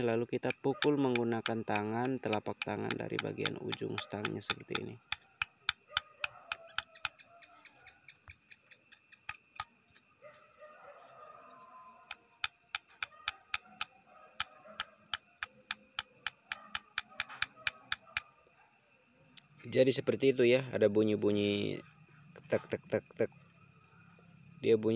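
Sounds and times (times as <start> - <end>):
connecting rod metallic ticks: 0.5 - 7.2.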